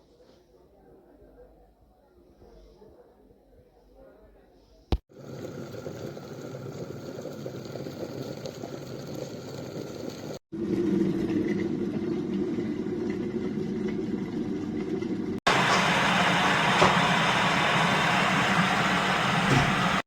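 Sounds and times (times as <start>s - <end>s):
water hissing to the boil: 5.1s - 10.4s, 15.4s - 20.0s
electric kettle rumbling: 5.1s - 20.0s.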